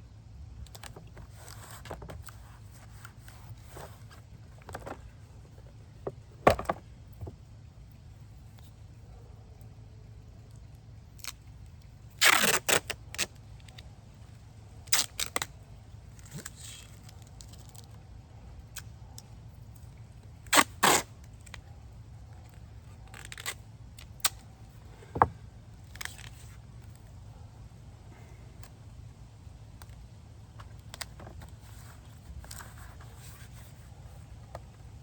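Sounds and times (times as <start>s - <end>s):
tape crackling and clicking: 0.6s - 7.8s, 10.3s - 14.2s, 14.8s - 35.0s
duct tape ripping: 12.1s - 13.8s, 14.8s - 15.5s, 20.4s - 21.6s, 23.0s - 24.4s, 25.8s - 27.0s.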